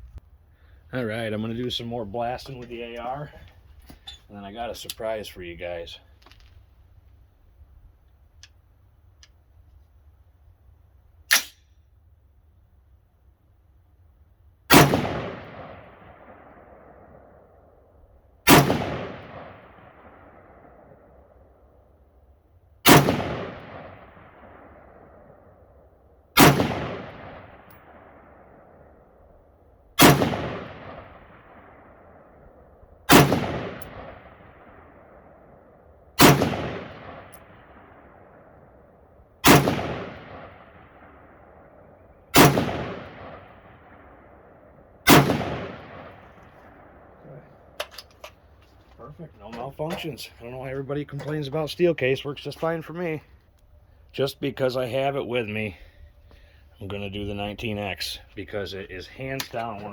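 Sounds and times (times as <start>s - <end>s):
rifle shots echoing: 11.3s - 11.7s, 14.7s - 22.0s, 22.8s - 52.8s.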